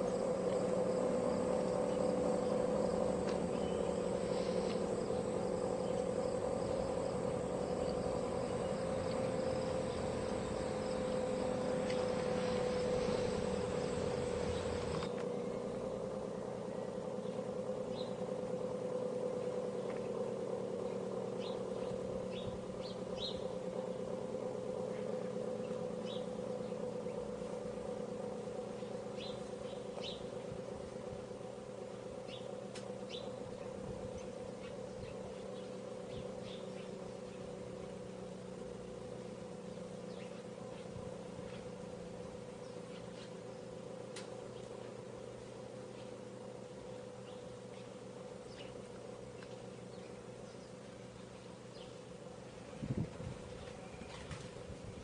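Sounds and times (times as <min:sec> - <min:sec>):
birds chirping: 0:00.0 - 0:18.4, 0:19.6 - 0:54.6
air raid sirens: 0:00.0 - 0:34.9
crickets chirping: 0:00.0 - 0:54.1.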